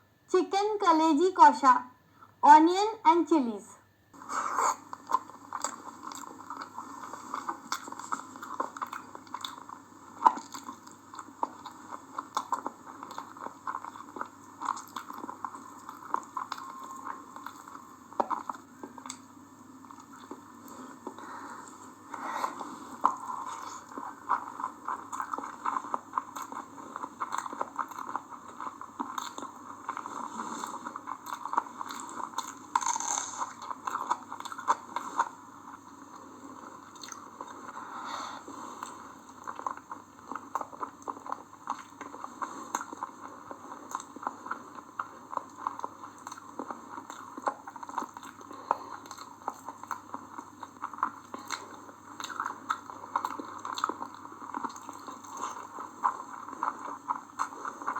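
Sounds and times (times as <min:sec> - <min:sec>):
mouth clicks and smacks: 0:04.2 - 0:16.6
person chewing food: 0:04.2 - 0:57.9.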